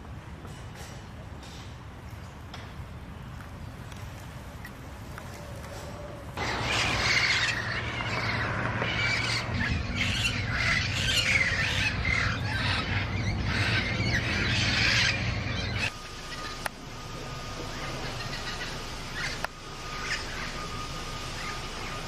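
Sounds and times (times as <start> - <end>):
parrots squawking and chattering: 5.8 - 16.7, 17.6 - 20.7.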